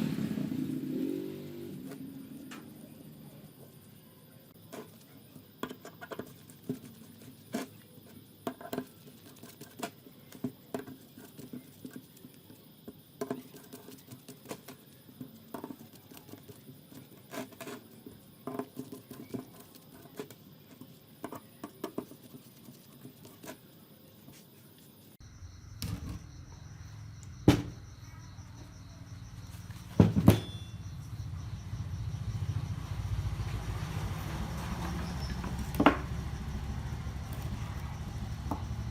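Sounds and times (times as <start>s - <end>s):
sharp knocks: 27.4s - 27.8s
low steady rumble: 30.6s - 38.9s.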